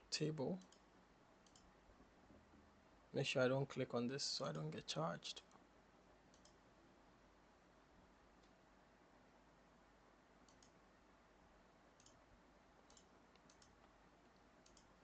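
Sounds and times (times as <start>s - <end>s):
computer mouse clicks: 0.6s - 1.7s, 6.3s - 6.6s, 10.4s - 10.8s, 12.0s - 12.2s, 12.8s - 15.0s.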